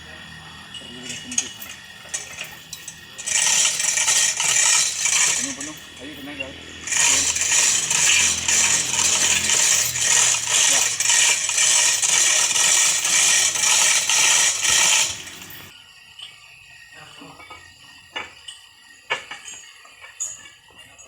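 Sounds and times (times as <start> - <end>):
drilling machine metallic grinding: 0.0 - 15.8.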